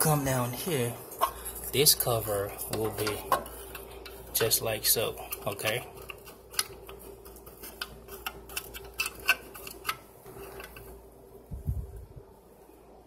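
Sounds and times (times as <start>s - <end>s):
faint steady hum: 0.0s - 13.0s
plastic parts clicking and tapping: 5.3s - 11.0s.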